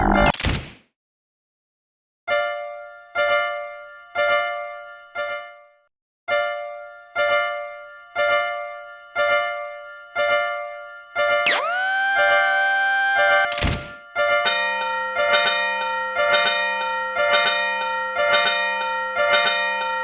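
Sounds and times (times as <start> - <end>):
tone swooping up in pitch: 11.5 - 13.5.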